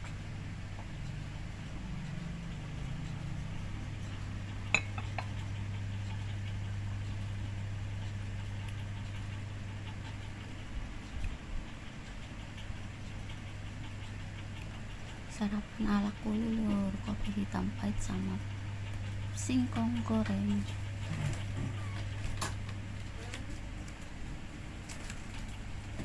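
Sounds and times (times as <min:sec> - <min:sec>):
low mechanical hum: 0:00.0 - 0:26.0.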